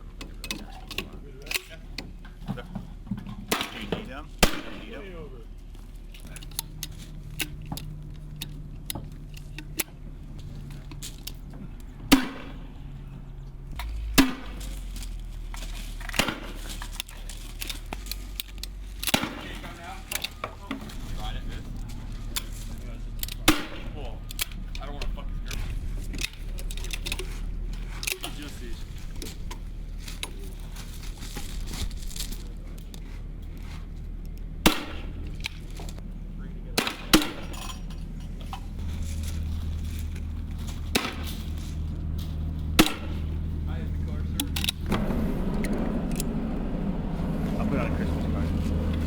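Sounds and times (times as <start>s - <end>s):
gear clicking and rattling: 0.0s - 49.0s
sharp gunshot: 12.1s - 12.7s
weapon shots with echo: 12.1s - 12.7s.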